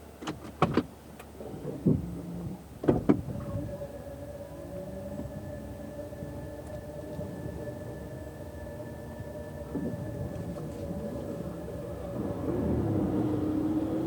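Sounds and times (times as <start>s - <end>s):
steady in-car hum: 0.0s - 14.0s
sharp clunks and knocks: 0.2s - 0.9s, 1.8s - 3.4s.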